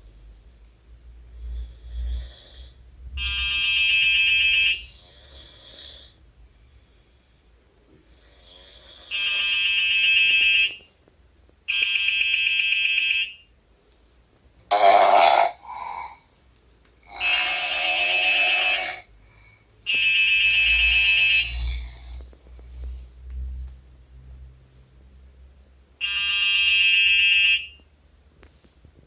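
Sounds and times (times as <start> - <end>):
person snoring: 14.7 - 16.3, 17.0 - 19.1, 21.4 - 22.3.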